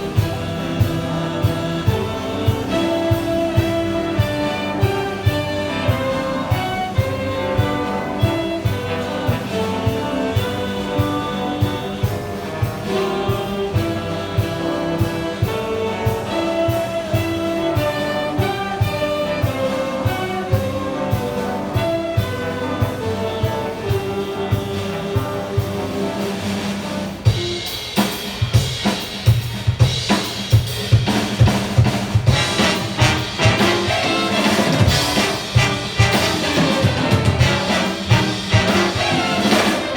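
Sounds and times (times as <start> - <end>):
trumpets: 0.0 - 29.0, 31.4 - 39.9
big band jazz: 0.0 - 39.9
drum kit beat: 0.0 - 39.9.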